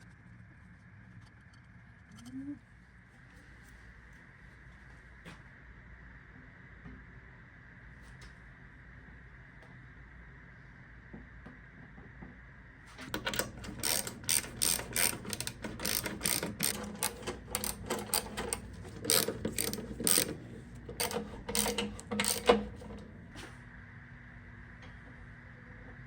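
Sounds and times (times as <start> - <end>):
sharp metallic clicks: 13.1 - 20.4, 21.0 - 23.0.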